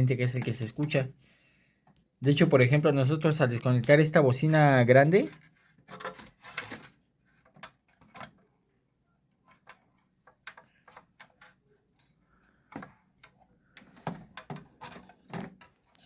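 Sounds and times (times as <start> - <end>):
light clicks and taps on wires: 0.2 - 1.0, 9.5 - 16.0.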